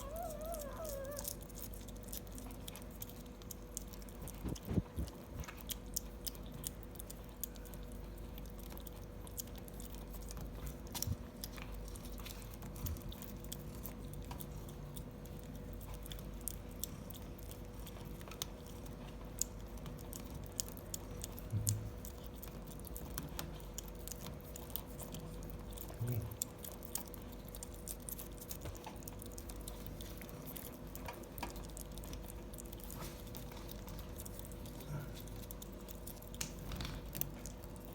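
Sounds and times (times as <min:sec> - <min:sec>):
cat chewing crunchy treat: 0:00.0 - 0:37.9
faint steady hum: 0:00.0 - 0:37.9
low thuds: 0:04.2 - 0:05.5.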